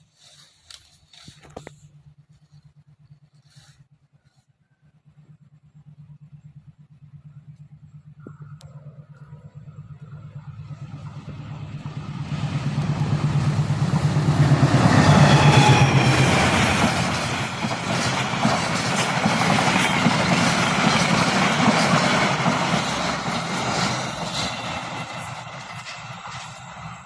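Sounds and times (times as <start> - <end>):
diesel locomotive engine rumble: 0.0 - 27.0
train wheels clicking over rail joints: 7.5 - 27.0.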